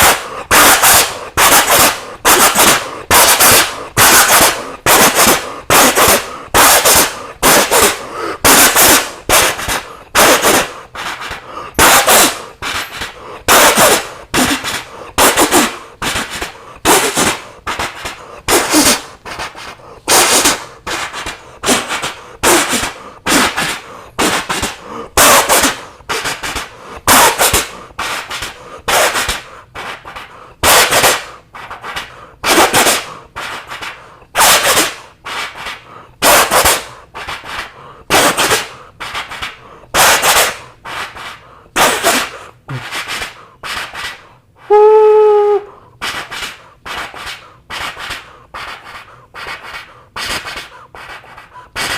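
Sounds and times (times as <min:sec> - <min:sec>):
mouth imitation of steam train: 0:44.6 - 0:45.8.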